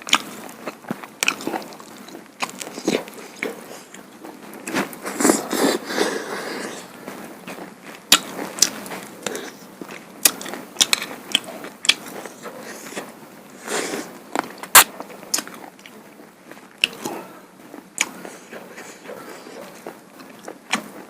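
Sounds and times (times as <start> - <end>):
person chewing food: 0.0 - 21.0
lip smacks: 18.0 - 21.0.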